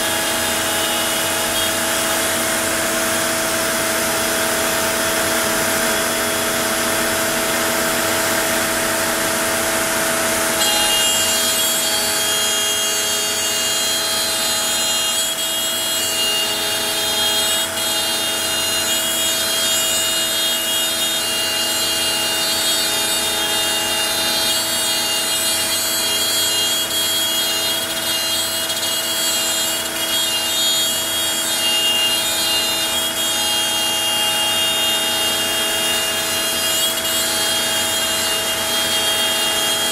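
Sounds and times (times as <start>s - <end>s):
high whine: 0.0s - 13.3s
router spindle cutting wood: 0.0s - 39.9s.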